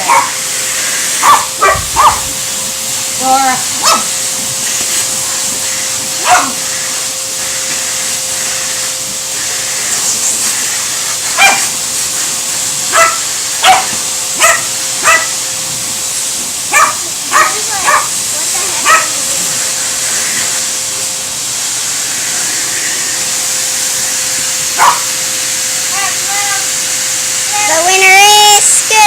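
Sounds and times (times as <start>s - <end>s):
dog barking: 0.0s - 0.4s, 1.2s - 2.3s, 3.8s - 4.1s, 6.2s - 6.6s, 11.3s - 11.8s, 12.9s - 15.4s, 16.7s - 18.2s, 18.8s - 19.2s, 24.8s - 25.1s
vacuum cleaner hum: 0.0s - 29.0s.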